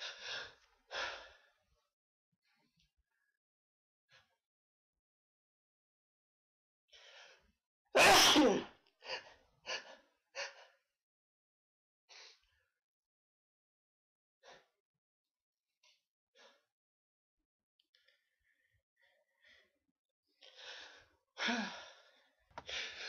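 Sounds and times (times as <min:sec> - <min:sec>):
person sneezing loudly: 0:08.0 - 0:08.7.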